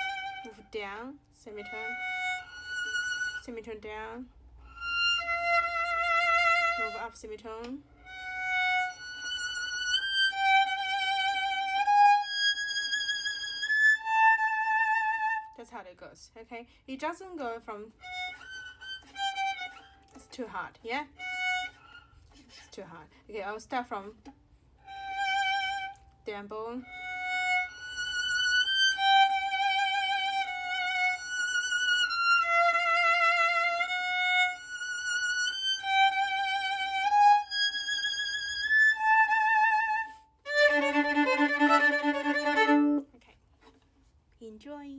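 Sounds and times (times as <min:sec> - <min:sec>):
solo violin long bowed notes: 0:00.0 - 0:00.8, 0:01.5 - 0:03.7, 0:04.6 - 0:07.3, 0:08.0 - 0:15.6, 0:18.0 - 0:20.2, 0:21.1 - 0:22.2, 0:24.8 - 0:26.2, 0:26.8 - 0:43.2.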